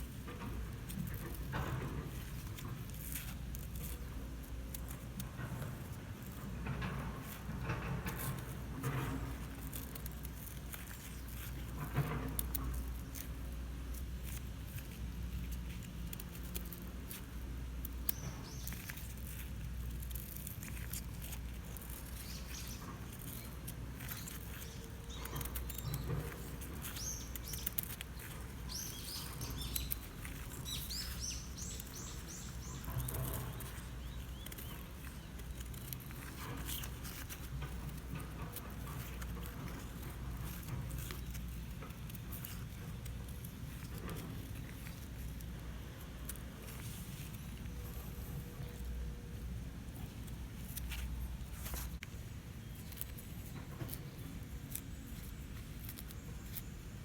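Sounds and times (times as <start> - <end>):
handling clicks and rustles: 0.0 - 57.0
small birds chirping: 16.5 - 57.0.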